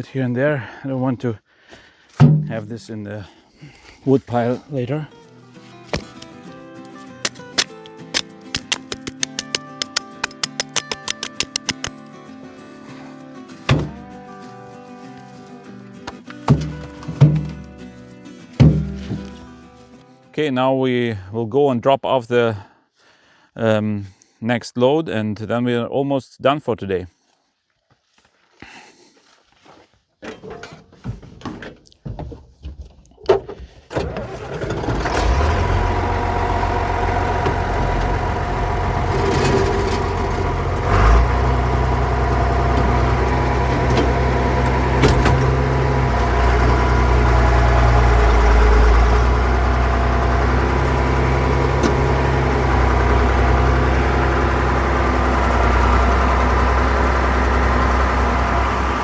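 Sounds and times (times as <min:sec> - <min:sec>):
clicks and knocks: 0:08.6 - 0:11.9
tractor diesel engine running: 0:35.2 - 0:59.0.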